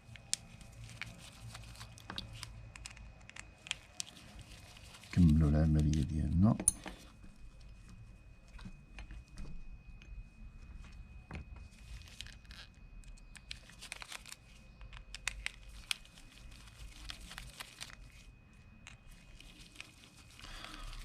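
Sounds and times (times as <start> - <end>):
metal parts clicking and scraping: 6.6 - 7.0.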